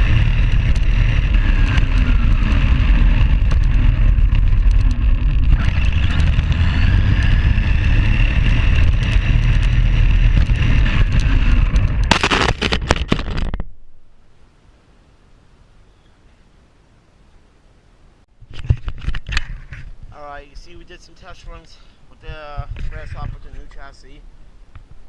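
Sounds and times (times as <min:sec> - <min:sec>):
rc car motor and gears whining: 0:00.0 - 0:13.5
constant clicks: 0:00.0 - 0:13.7
heavy rumble: 0:00.0 - 0:14.6, 0:18.3 - 0:25.0.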